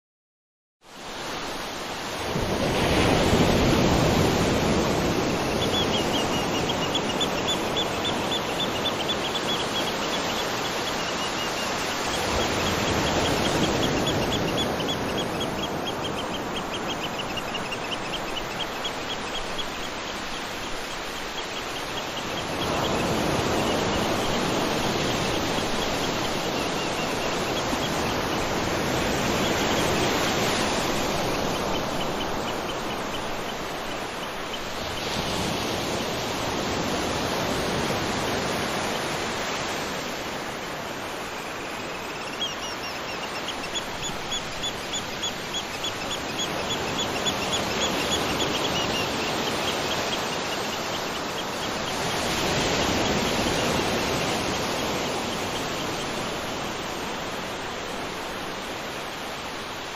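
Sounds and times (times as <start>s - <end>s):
ocean waves breaking: 1.0s - 59.9s
faint high-pitched chirping: 5.1s - 35.0s, 41.2s - 56.3s.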